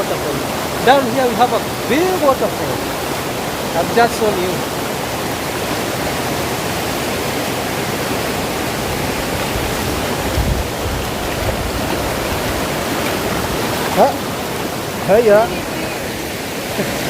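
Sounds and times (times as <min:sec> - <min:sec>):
waterfall roaring: 0:00.0 - 0:17.0.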